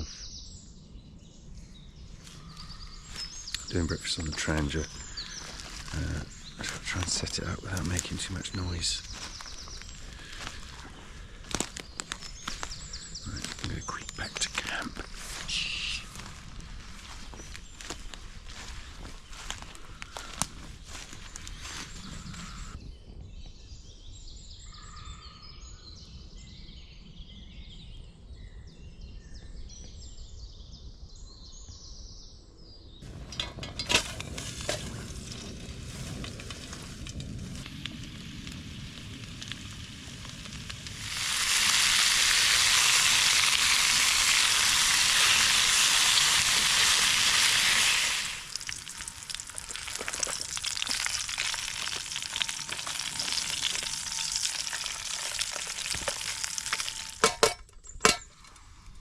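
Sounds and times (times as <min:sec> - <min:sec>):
birds singing: 0:00.0 - 0:37.2
cooking kit clattering: 0:33.0 - 0:35.1, 0:49.6 - 0:58.5
food sizzling in a pan: 0:34.0 - 0:57.5.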